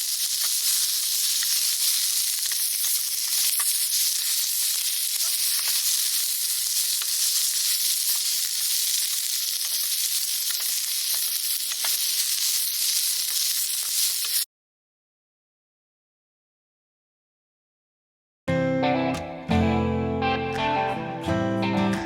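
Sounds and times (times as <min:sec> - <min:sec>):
food sizzling in a pan: 0:00.0 - 0:14.5.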